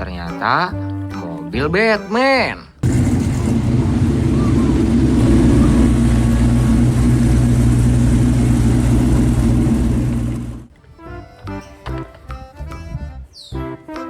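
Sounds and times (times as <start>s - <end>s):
light background music: 0.0s - 2.8s
motor engine droning: 2.8s - 10.7s.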